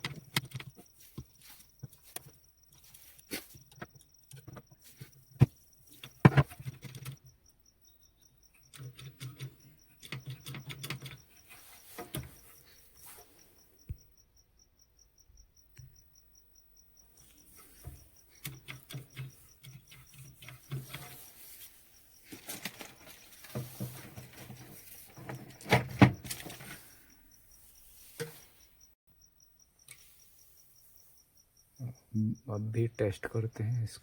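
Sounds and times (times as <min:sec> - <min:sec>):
metallic clicks and scraping: 0:00.0 - 0:07.3, 0:08.5 - 0:13.3, 0:17.2 - 0:27.1
faint high chirp: 0:07.4 - 0:08.7.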